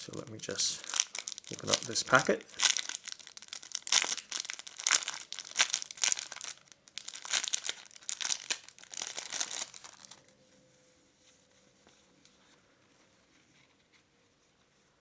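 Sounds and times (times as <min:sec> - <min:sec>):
packet crinkling and tearing: 0:00.0 - 0:10.3.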